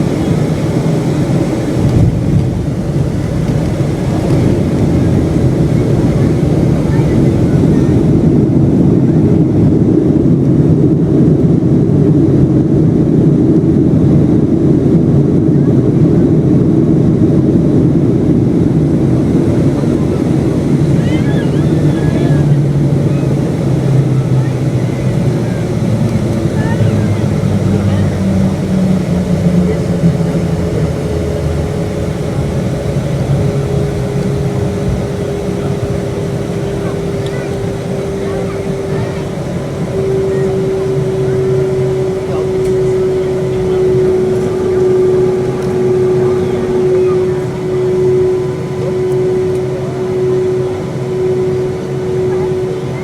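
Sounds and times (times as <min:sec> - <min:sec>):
airliner cabin engine noise: 0:00.0 - 0:53.0
steady tone: 0:16.8 - 0:53.0.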